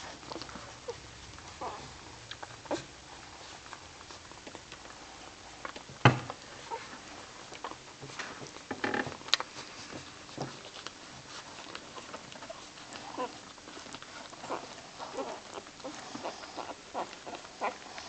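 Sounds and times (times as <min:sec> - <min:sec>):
puppies squeaking and whimpering: 0:00.0 - 0:04.6, 0:06.6 - 0:07.7, 0:10.6 - 0:18.0.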